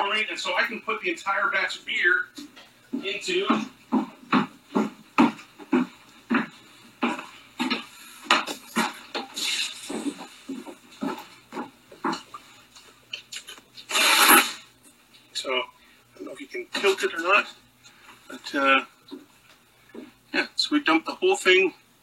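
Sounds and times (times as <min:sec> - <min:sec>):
footsteps: 0:02.3 - 0:15.3.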